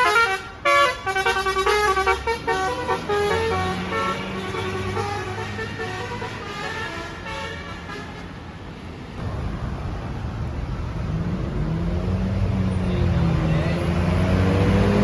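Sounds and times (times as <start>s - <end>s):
bus air horn playing a tune: 0.0s - 8.4s
bus engine: 0.0s - 15.0s
road noise: 0.0s - 15.0s.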